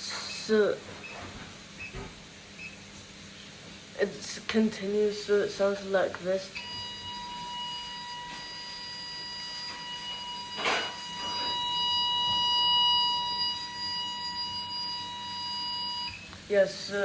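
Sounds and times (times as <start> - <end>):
alarm panel test tone: 6.6 - 16.4.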